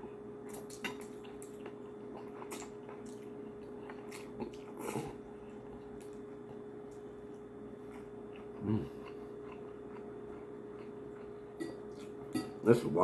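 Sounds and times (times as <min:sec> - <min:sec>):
faint steady hum: 0:00.0 - 0:13.0
person chewing: 0:00.5 - 0:12.6.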